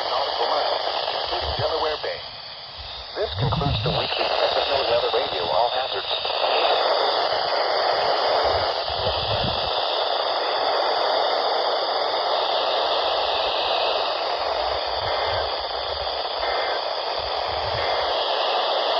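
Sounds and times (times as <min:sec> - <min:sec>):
radio static hiss: 0:00.0 - 0:18.9
faint low rumbles: 0:01.0 - 0:05.4, 0:08.4 - 0:09.8, 0:17.2 - 0:18.2.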